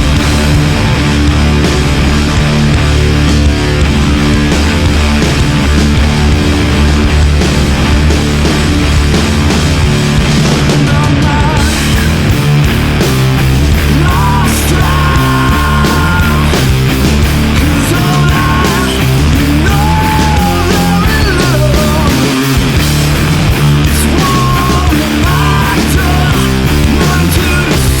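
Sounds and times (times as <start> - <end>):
rock music: 0.0 - 28.0.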